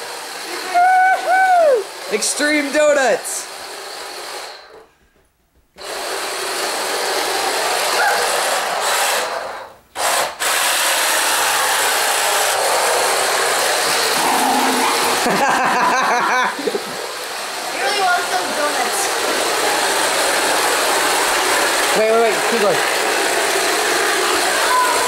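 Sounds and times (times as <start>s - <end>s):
tyres scrubbing: 12.5s - 24.3s.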